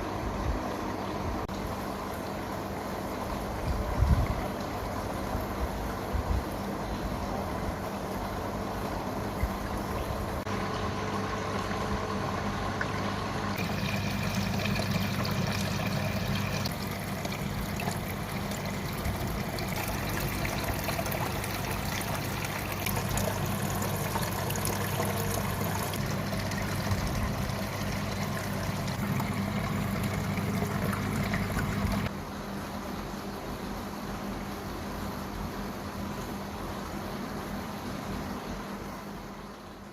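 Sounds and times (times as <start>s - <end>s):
steady low hum: 0.0s - 36.9s
small waterfall trickling: 13.6s - 32.1s.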